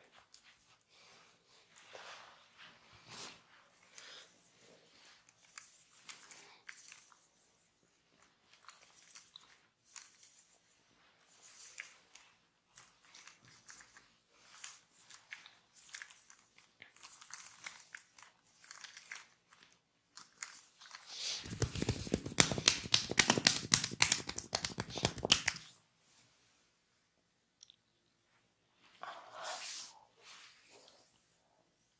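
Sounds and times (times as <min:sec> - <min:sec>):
hands scratching and rubbing: 0:04.9 - 0:25.8
quick percussive hand strokes: 0:21.1 - 0:25.8.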